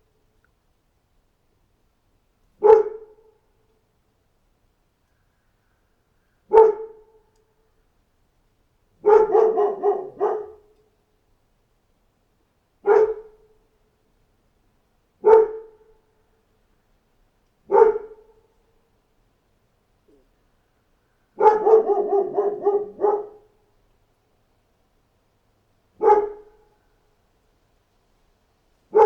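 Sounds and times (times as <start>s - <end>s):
dog barking: 2.6s - 3.3s, 6.5s - 7.2s, 9.0s - 10.8s, 12.8s - 13.4s, 15.2s - 15.9s, 17.7s - 18.4s, 21.4s - 23.6s, 26.0s - 26.8s.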